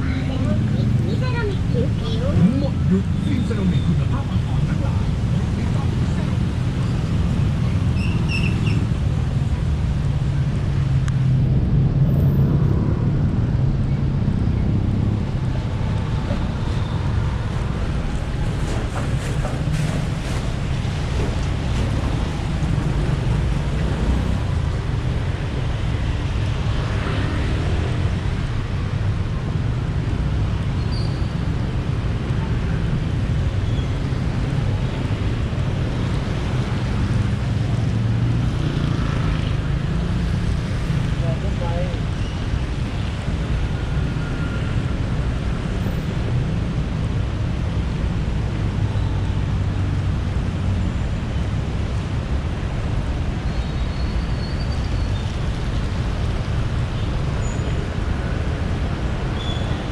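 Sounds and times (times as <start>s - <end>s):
traffic drone of passing cars: 0.0s - 59.9s.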